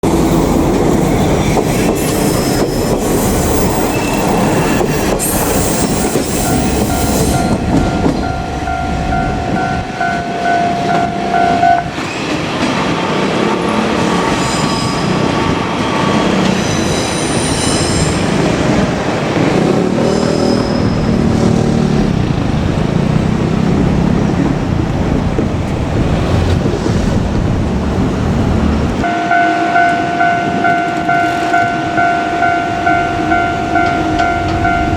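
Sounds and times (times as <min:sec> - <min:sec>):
diesel railcar rumble: 0:00.0 - 0:34.9
high wheel squeal: 0:00.9 - 0:12.6, 0:13.9 - 0:18.5, 0:19.9 - 0:21.8
level crossing warning bell: 0:04.2 - 0:12.1, 0:29.0 - 0:34.9.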